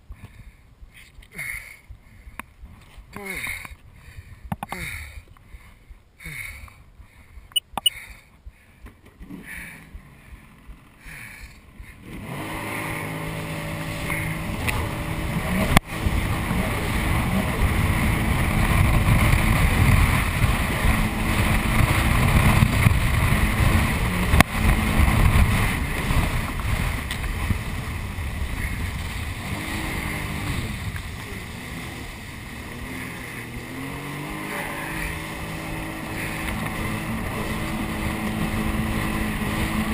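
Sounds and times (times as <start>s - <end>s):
jet ski engine: 0.1s - 39.9s
rushing water: 12.6s - 39.9s
wind on microphone: 13.9s - 39.9s.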